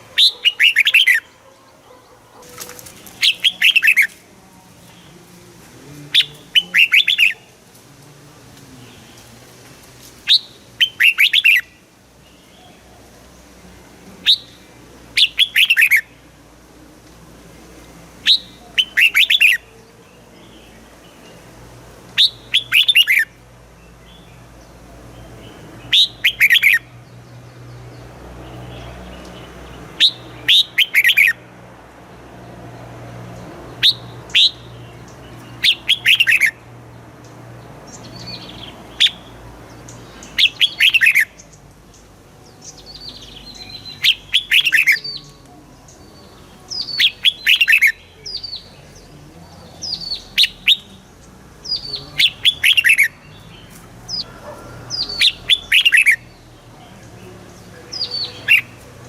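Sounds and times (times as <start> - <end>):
bird singing whistled notes: 3.2 - 4.2, 6.1 - 7.5, 10.3 - 11.8, 14.2 - 14.6, 15.2 - 16.1, 18.2 - 19.7, 22.2 - 23.4, 25.8 - 27.0, 30.0 - 31.4, 33.8 - 36.6, 38.0 - 41.5, 42.6 - 49.1, 49.7 - 56.6, 57.9 - 58.8.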